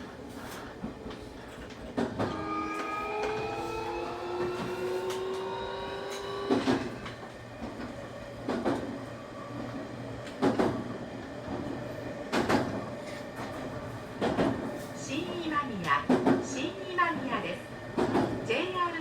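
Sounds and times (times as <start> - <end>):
electric train inverter whine: 2.2 - 8.2
train wheels clacking over rail joints: 4.4 - 8.9, 18.0 - 18.4.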